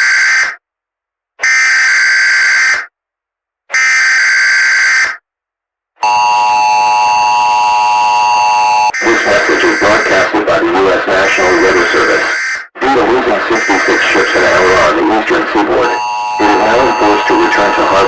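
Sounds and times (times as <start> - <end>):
screeching data bursts: 6.0 - 10.4, 11.2 - 18.0
two-tone attention signal: 15.8 - 18.0.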